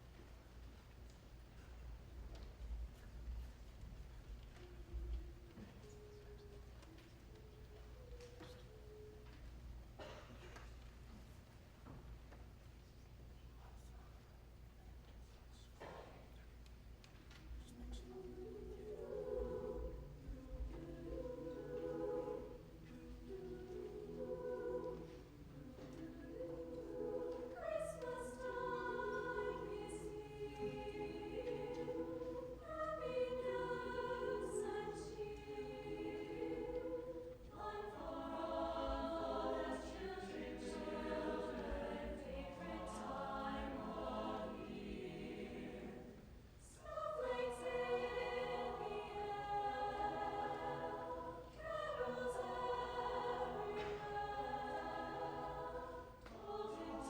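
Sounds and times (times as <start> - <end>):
choir singing: 17.6 - 57.0.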